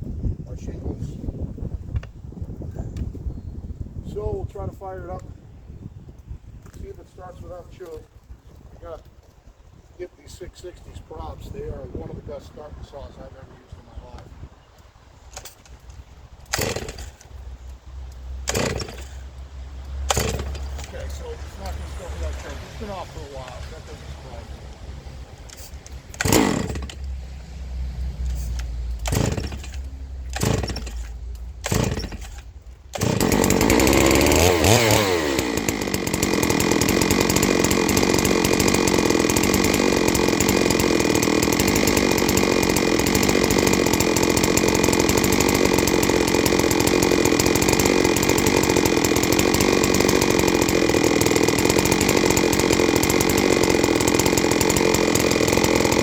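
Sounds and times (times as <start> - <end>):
chainsaw pull-start attempts: 15.2 - 27.3, 28.0 - 56.0
chainsaw cutting log at full throttle: 16.5 - 56.0.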